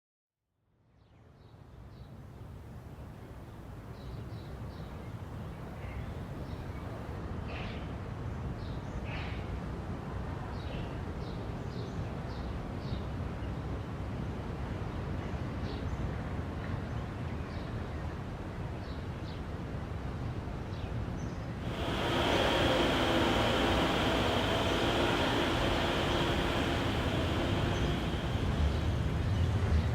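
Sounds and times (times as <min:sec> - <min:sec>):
birds chirping: 0:21.6 - 0:29.6
low outdoor rumble: 0:21.6 - 0:29.9.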